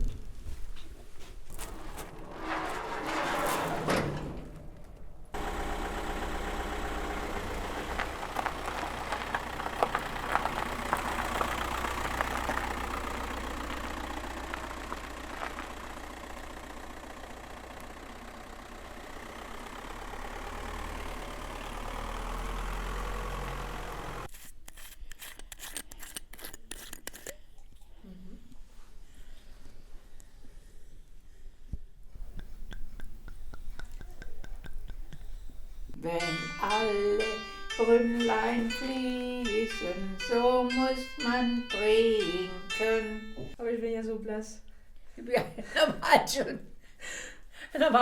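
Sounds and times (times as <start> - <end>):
engine humming: 1.5 - 24.3, 32.2 - 43.6.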